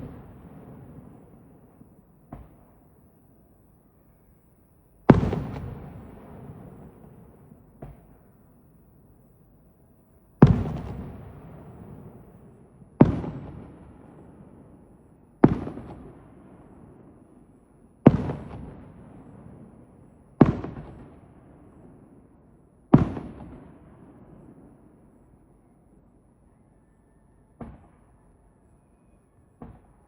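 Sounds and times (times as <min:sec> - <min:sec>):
firework shells booming: 0:00.0 - 0:09.2, 0:10.1 - 0:13.7.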